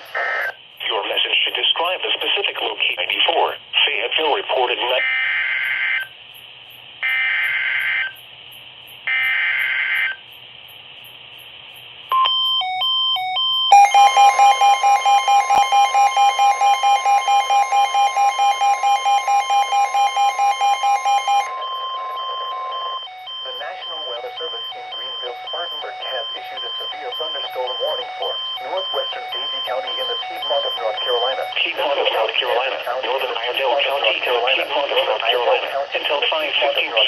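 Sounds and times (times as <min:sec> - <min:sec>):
steady warning alarm tone: 0:07.0 - 0:08.2, 0:12.1 - 0:33.2
screechy data tone bursts: 0:09.1 - 0:10.3, 0:13.7 - 0:27.8
rapid pulsing beep: 0:12.1 - 0:31.6.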